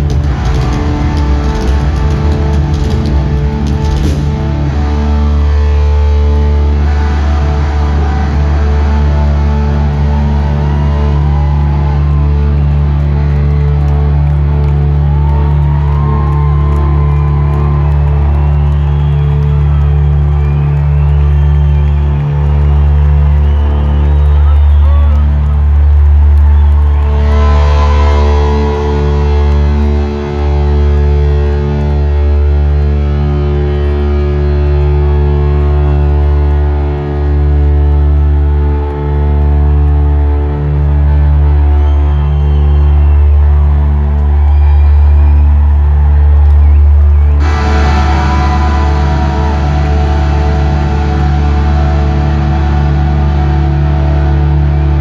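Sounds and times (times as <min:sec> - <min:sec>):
booming low end: 0:00.0 - 0:06.7
rock band playing live: 0:00.0 - 0:12.6, 0:47.4 - 0:55.0
bass guitar: 0:00.0 - 0:55.0
electric guitars: 0:00.0 - 0:55.0.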